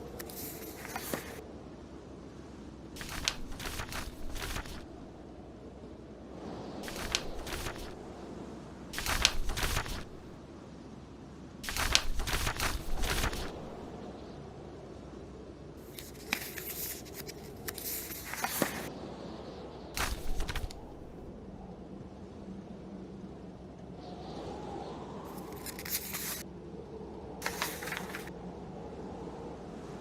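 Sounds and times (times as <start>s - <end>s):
paper pages turning: 0.0s - 1.4s, 3.0s - 5.1s, 6.8s - 8.0s, 9.0s - 10.4s, 11.6s - 13.9s, 15.9s - 18.9s, 20.0s - 21.3s, 25.3s - 26.4s, 27.4s - 28.3s
storm wind: 0.0s - 30.0s.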